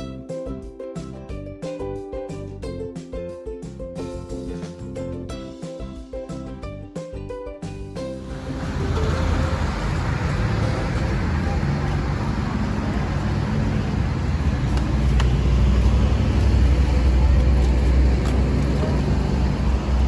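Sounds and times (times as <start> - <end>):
car road and engine noise: 8.2 - 20.0.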